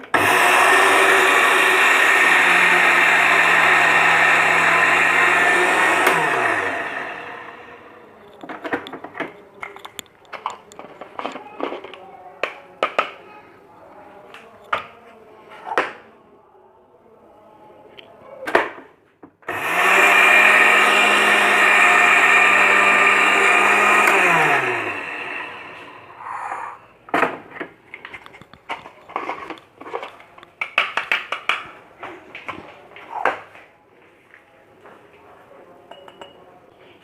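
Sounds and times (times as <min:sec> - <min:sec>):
mixer grinder motor running: 0:00.0 - 0:08.2, 0:19.5 - 0:26.6
knocks and small clicks: 0:08.2 - 0:13.2, 0:27.6 - 0:31.7.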